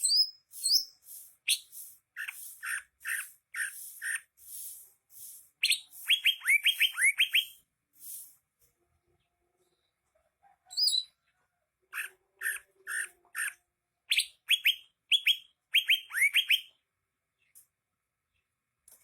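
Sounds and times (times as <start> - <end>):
bird singing whistles and chirps: 0.0 - 4.8, 5.6 - 7.6, 10.7 - 11.1, 14.1 - 16.8.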